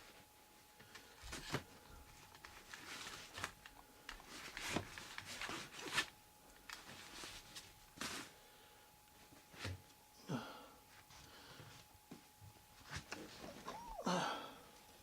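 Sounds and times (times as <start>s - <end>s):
objects rustling and scraping: 0.8s - 3.6s, 6.7s - 8.6s
faint high hum: 7.6s - 15.0s.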